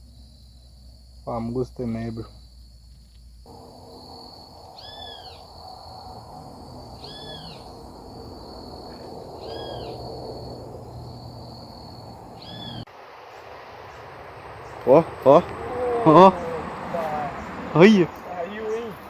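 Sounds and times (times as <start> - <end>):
high insect trill: 0.0 - 19.0
river water rushing: 4.5 - 19.0
bird whistling call: 4.8 - 5.5, 7.0 - 7.7, 8.9 - 10.1, 12.4 - 12.9.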